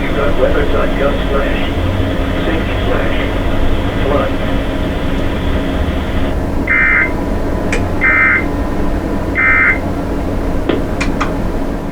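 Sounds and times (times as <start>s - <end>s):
digital data tone bursts: 0.0s - 7.2s, 7.8s - 8.6s, 9.4s - 9.9s
background hiss and hum: 0.0s - 11.9s.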